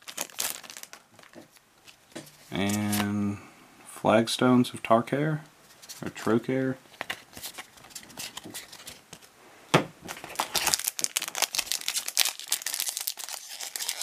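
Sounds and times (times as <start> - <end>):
foil wrapper tearing: 0.0 - 1.4, 10.1 - 14.0
foil wrapper crinkling: 0.0 - 3.0, 10.1 - 14.0.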